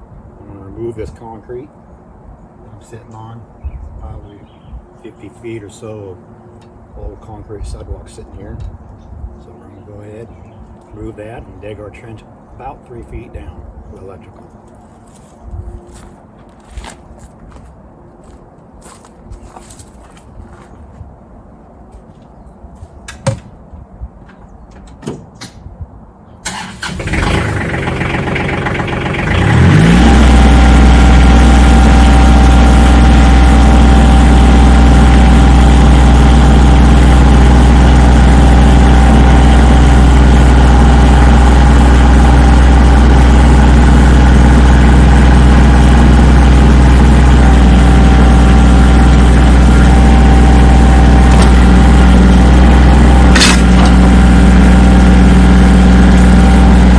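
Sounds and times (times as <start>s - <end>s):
engine starting and running: 26.4s - 56.9s.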